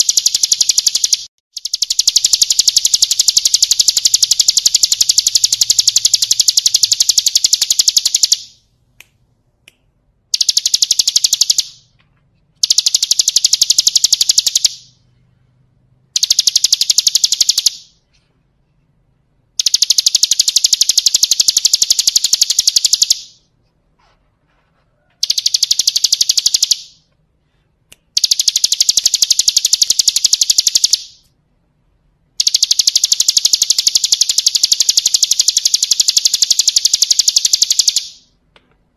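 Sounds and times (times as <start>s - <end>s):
bird rattling trill: 0.0s - 8.6s, 10.3s - 11.8s, 12.6s - 14.8s, 16.2s - 17.9s, 19.6s - 23.4s, 25.2s - 27.0s, 28.2s - 31.2s, 32.4s - 38.3s.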